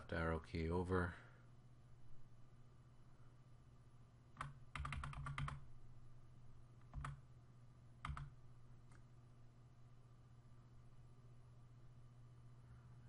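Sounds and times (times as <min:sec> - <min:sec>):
steady low hum: 0:00.0 - 0:13.0
computer keyboard keys tapped: 0:04.4 - 0:05.6, 0:06.8 - 0:07.2, 0:08.0 - 0:09.0.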